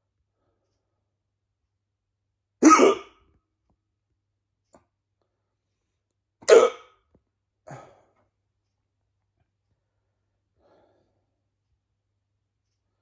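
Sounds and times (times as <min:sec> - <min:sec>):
person hiccuping: 0:02.6 - 0:03.2, 0:06.4 - 0:07.0.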